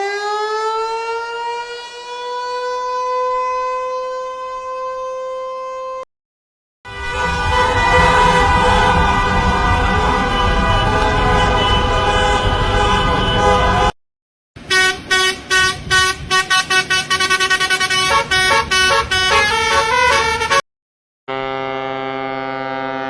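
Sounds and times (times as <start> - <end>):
long vehicle horn blast: 6.9 - 14.0, 14.6 - 20.6, 21.3 - 23.0
short horn toots: 6.9 - 14.0, 14.7 - 20.6
steady horn tone: 6.9 - 14.0, 14.6 - 20.6, 21.3 - 23.0.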